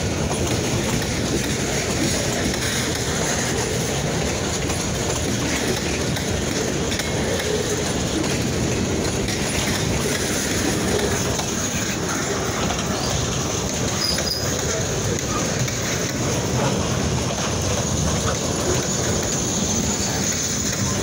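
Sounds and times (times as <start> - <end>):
train wheels on rails: 0.0 - 21.0.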